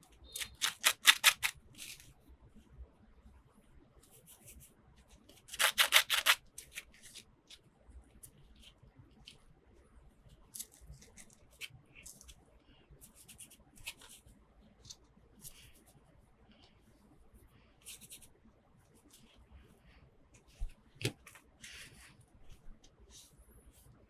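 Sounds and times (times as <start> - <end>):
handling plastic toy pieces: 0.3 - 2.1, 5.4 - 7.6
packaging rustling: 0.4 - 2.0.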